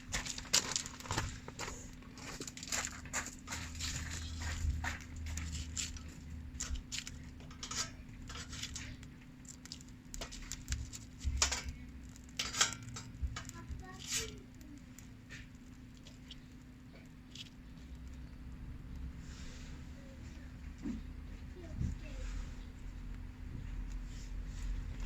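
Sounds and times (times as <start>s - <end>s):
striker scraping fire-starter rod: 0.0s - 16.2s.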